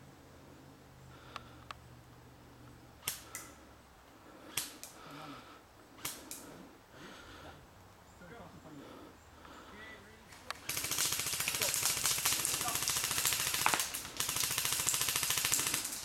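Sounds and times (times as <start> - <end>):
faint clicks: 6.0 - 6.5
airsoft gun shots: 10.6 - 16.0.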